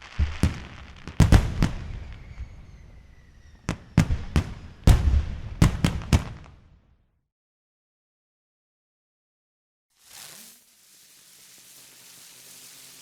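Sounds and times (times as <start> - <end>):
fireworks bangs: 0.0 - 6.8
faint falling whistle: 1.7 - 4.1.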